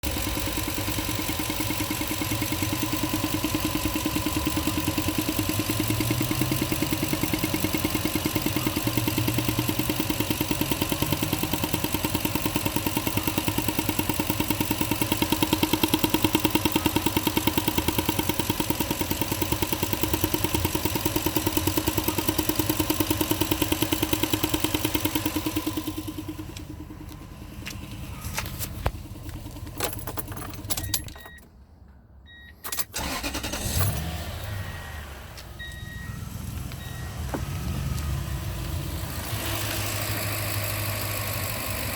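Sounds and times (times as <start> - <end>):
truck engine idling: 0.0 - 41.9.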